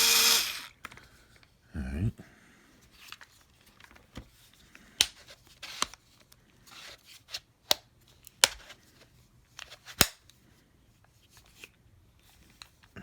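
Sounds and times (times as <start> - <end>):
cordless screwdriver clicks: 0.0 - 0.7.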